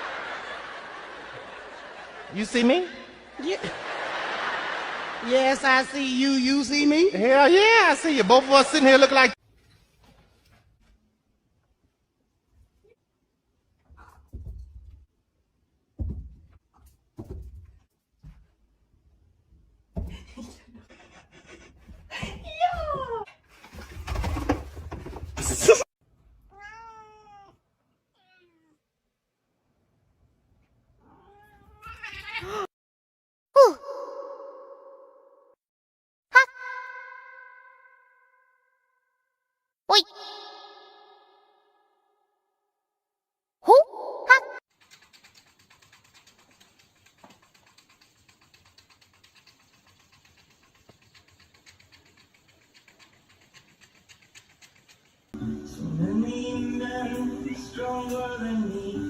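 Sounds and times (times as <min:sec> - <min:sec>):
cat meowing: 0:26.5 - 0:27.6, 0:28.2 - 0:28.8, 0:31.0 - 0:32.7.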